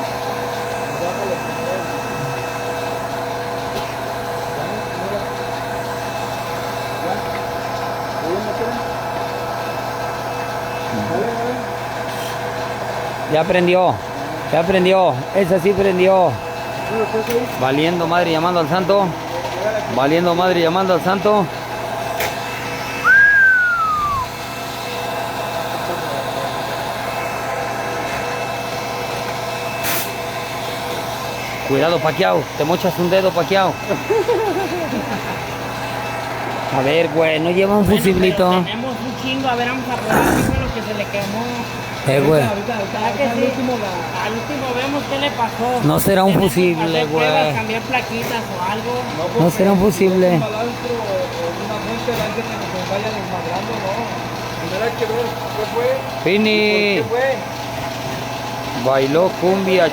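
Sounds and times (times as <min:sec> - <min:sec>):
whistle-like tone sweeping down: 0:23.0 - 0:24.3
faint voices: 0:39.8 - 0:40.9, 0:42.0 - 0:42.6.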